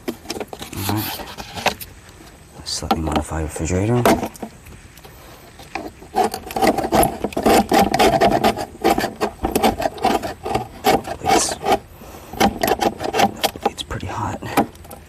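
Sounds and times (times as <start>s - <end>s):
rasping scraping strokes on metal body: 0.0s - 1.9s, 5.2s - 15.0s.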